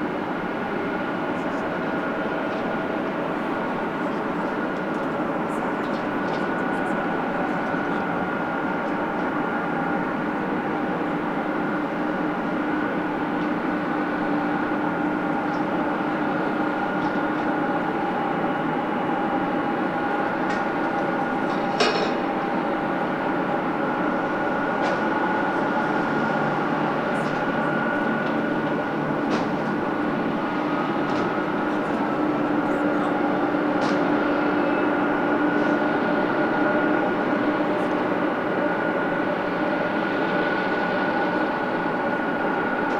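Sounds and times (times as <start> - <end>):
jet engines rushing and whining: 0.0 - 42.9.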